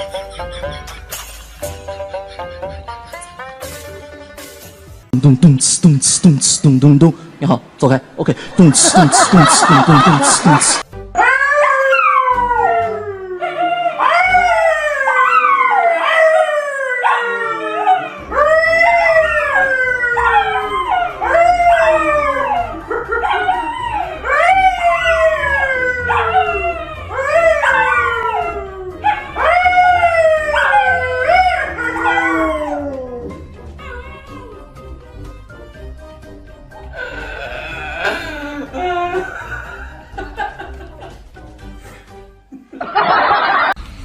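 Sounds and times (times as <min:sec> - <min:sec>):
dog howling: 0:11.2 - 0:34.8.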